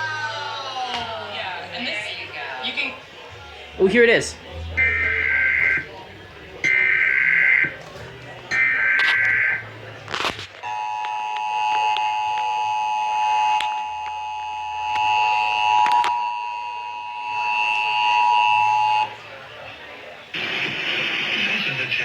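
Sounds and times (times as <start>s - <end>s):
two-tone alert signal: 4.8s - 5.9s
loud crack: 20.4s - 22.0s.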